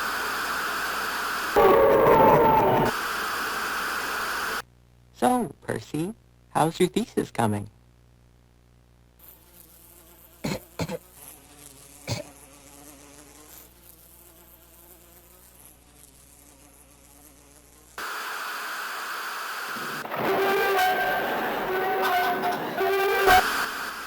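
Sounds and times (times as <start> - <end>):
loud hiss: 0.0 - 4.6, 18.0 - 24.0
faint buzzing hum: 0.0 - 24.0.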